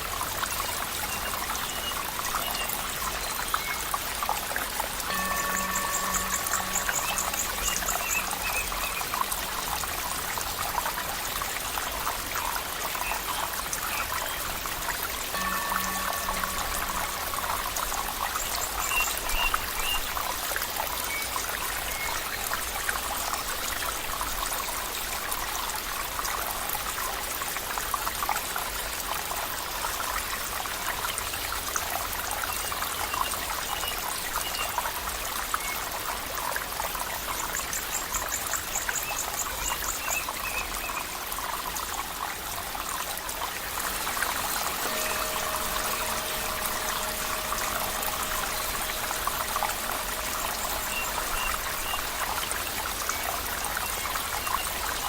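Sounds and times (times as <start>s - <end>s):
water trickling and flowing: 0.0s - 55.0s
faint high chirps: 5.1s - 9.0s, 15.3s - 19.6s, 43.8s - 55.0s.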